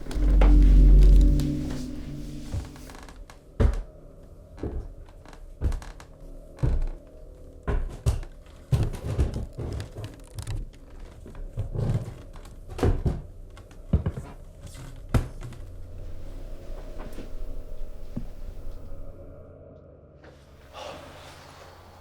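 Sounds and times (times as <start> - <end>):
low steady hum: 0.0 - 3.3, 15.6 - 19.6.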